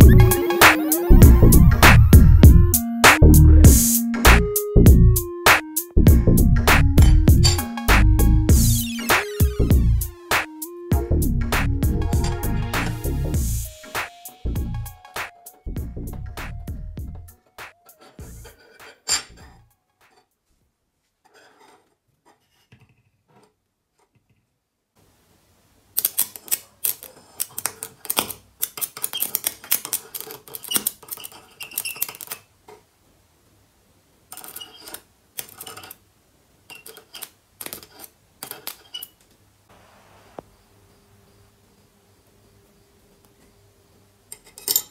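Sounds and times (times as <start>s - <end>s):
faint low hum: 39.7s - 44.9s.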